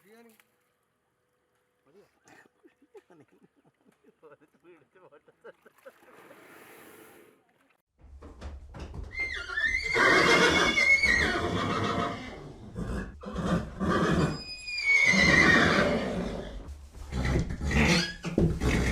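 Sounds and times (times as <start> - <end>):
horse whinnying: 9.2 - 18.9.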